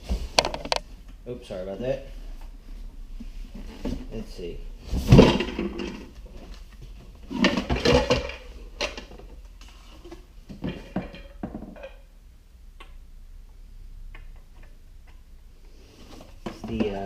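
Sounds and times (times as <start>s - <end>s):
plastic parts clattering: 0.3s - 0.9s, 5.0s - 6.6s, 7.3s - 9.4s.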